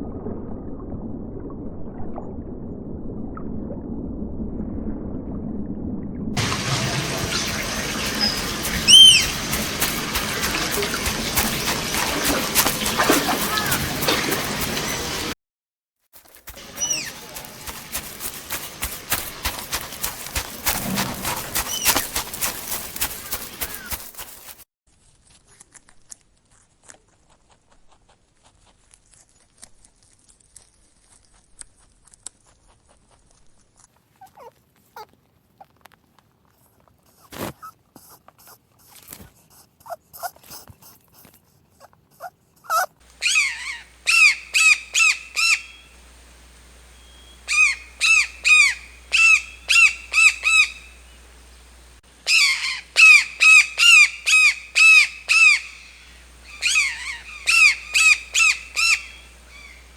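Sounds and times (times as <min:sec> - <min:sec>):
bird calling in runs: 0:07.3 - 0:15.3, 0:16.2 - 0:24.6, 0:42.7 - 0:46.1, 0:46.7 - 0:51.3, 0:52.2 - 0:59.9.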